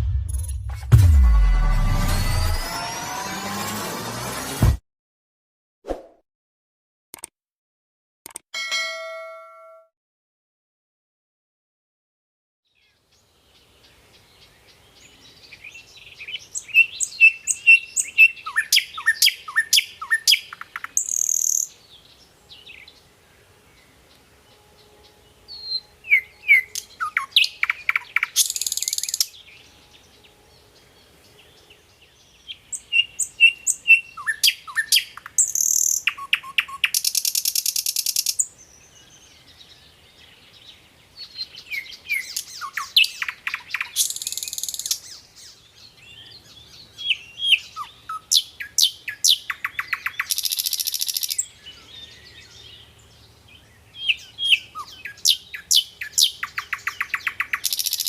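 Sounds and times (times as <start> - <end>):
nightingale singing: 12.7 - 23.1, 23.8 - 58.0.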